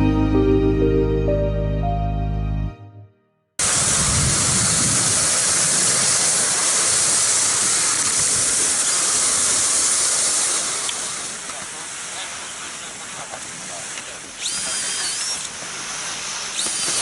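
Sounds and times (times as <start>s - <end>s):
soft piano music: 0.0s - 3.4s
loud steady hiss: 3.6s - 17.0s.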